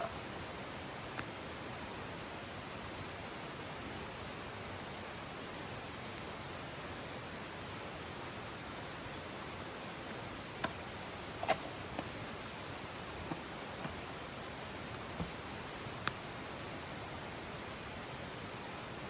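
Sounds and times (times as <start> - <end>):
campfire hiss: 0.0 - 19.0
wood crackling pops: 10.1 - 18.1.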